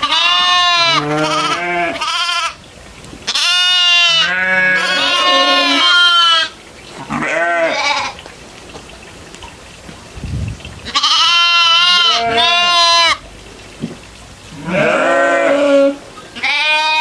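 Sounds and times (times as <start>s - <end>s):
goats bleating: 0.0s - 2.6s, 3.3s - 8.2s, 10.8s - 13.2s, 14.5s - 17.0s.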